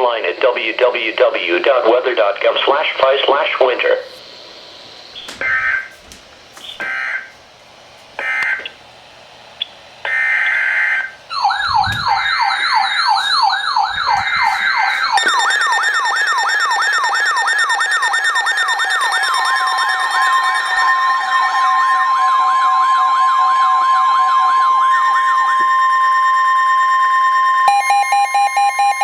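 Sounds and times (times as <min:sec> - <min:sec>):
buzzy digital data tones: 0:05.0 - 0:06.0, 0:09.6 - 0:23.4
siren sweeping up and down: 0:05.2 - 0:06.0, 0:10.1 - 0:29.0.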